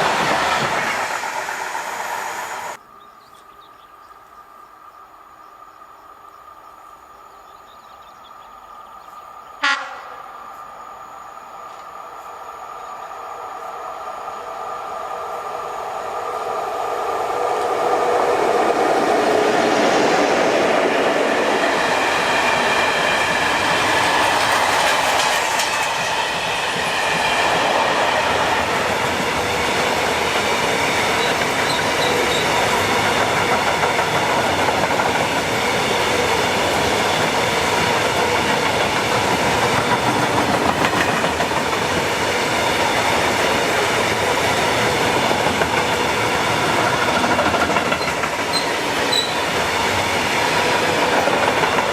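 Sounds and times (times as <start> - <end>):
train wheels clattering on rails: 0.0 - 2.8, 18.4 - 51.9.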